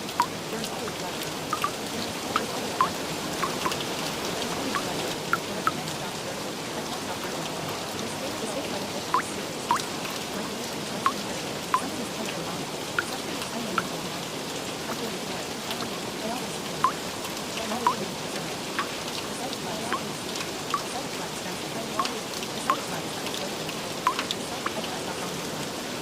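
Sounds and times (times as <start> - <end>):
steady rain: 0.0 - 26.0
single drops plinking: 1.5 - 1.8.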